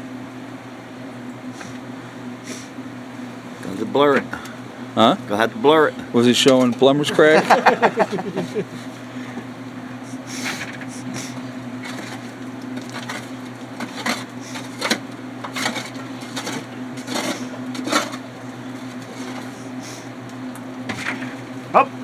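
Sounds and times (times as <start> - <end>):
steady low hum: 0.0 - 22.0
digging scrapes in clay: 10.2 - 20.1.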